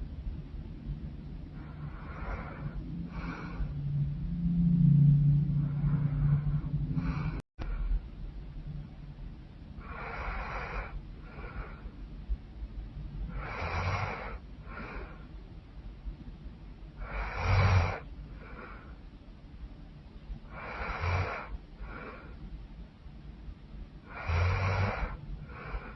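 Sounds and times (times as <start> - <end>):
soft breath: 1.4 - 8.1, 9.7 - 15.6, 16.9 - 19.3, 20.4 - 22.6, 24.0 - 25.9
woman snoring: 1.6 - 3.8, 9.8 - 11.8, 13.3 - 15.2, 17.0 - 18.7, 20.5 - 22.2, 24.1 - 25.9.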